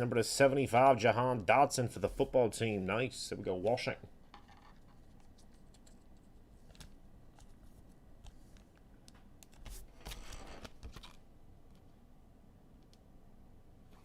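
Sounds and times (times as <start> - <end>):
trading cards rustling and clicking: 4.3 - 11.2.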